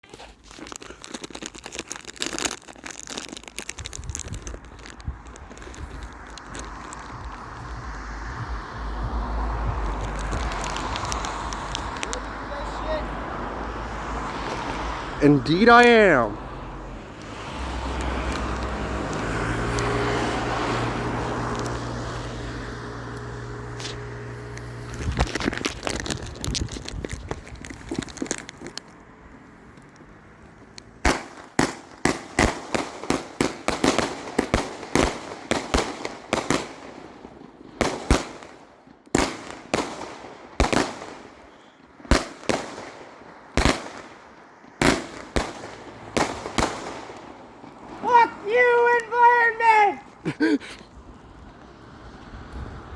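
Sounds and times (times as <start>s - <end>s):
fireworks crackling: 0.0s - 52.2s
fireworks hissing rush: 3.7s - 26.5s
sharp firework bangs: 31.0s - 48.1s.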